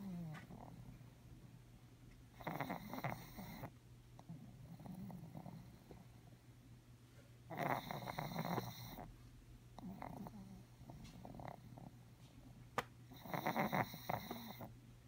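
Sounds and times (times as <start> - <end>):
dog snoring: 0.0 - 1.1, 2.3 - 6.2, 7.5 - 9.1, 9.8 - 12.1, 13.1 - 14.8.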